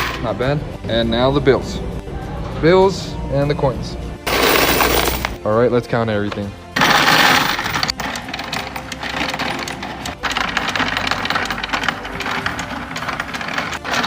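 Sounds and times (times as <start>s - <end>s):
coins rattling: 4.3s - 5.4s, 6.8s - 14.0s
coin counter motor running: 6.8s - 14.0s.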